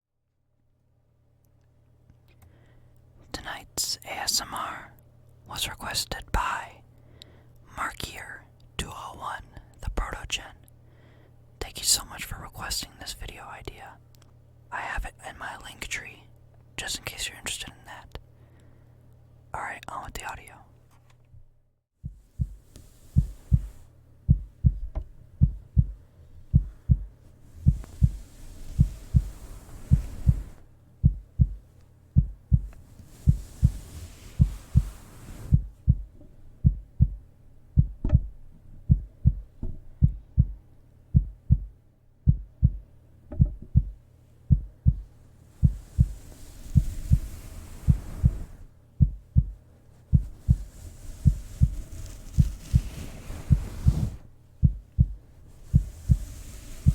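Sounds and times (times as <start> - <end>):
soft hiss: 1.4 - 21.2, 22.1 - 36.6, 43.7 - 56.9
heartbeat thumping: 22.0 - 33.8, 34.4 - 48.4, 49.0 - 56.9.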